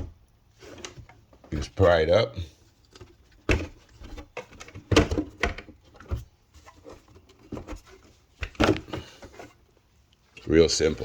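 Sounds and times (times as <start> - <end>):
plastic cover clicking and clattering: 2.8 - 9.4.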